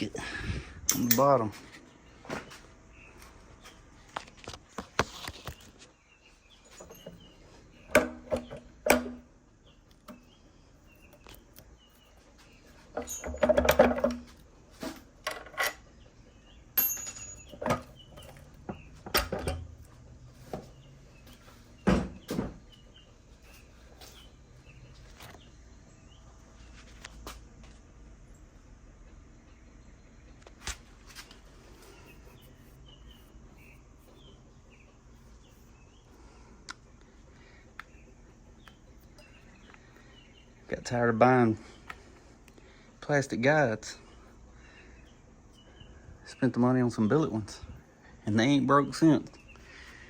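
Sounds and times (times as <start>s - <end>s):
metal tools clanking: 0.8s - 1.7s, 6.6s - 9.3s, 12.8s - 16.0s, 16.7s - 19.9s.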